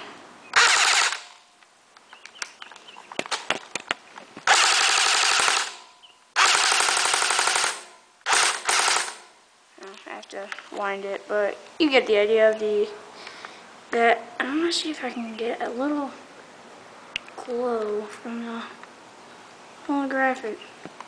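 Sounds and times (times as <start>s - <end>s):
gun clicks: 0.5s - 5.8s, 6.4s - 9.3s
airsoft gun firing bursts: 0.6s - 1.3s, 4.4s - 5.8s, 6.4s - 9.3s.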